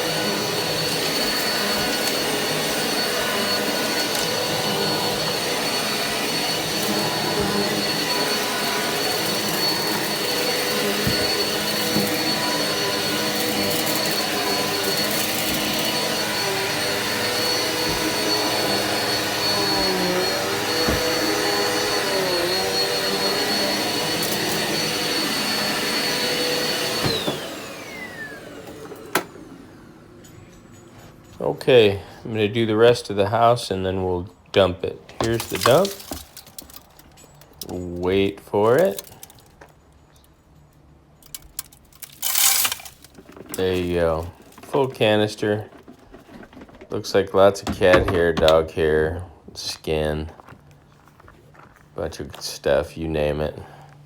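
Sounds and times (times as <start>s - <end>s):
vacuum cleaner motor whine: 0.0s - 31.6s, 35.2s - 36.8s.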